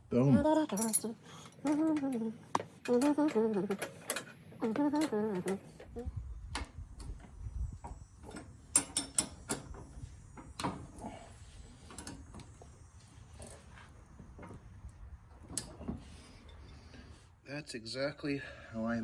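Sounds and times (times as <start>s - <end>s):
tools clicking and knocking: 8.3s - 9.8s.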